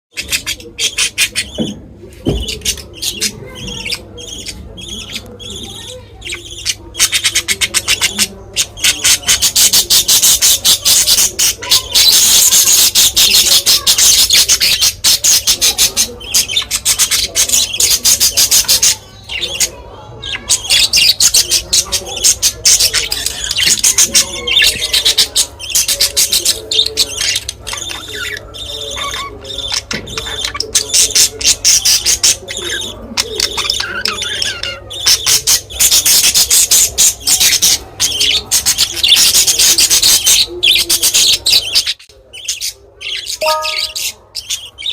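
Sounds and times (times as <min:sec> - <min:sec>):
budgerigars chattering: 0:00.1 - 0:44.9.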